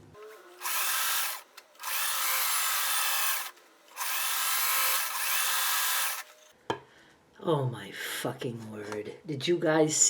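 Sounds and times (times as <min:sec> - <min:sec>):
sewing machine running: 0:00.2 - 0:06.3.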